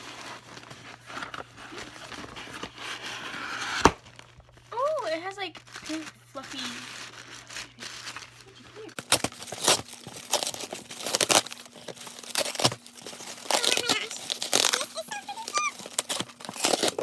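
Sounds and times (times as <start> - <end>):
packing paper crumpling: 0.0 - 17.0.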